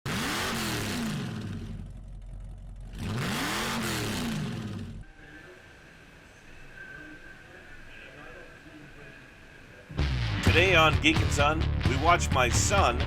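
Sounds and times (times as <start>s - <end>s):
engine revving with exhaust rush: 0.0s - 5.0s.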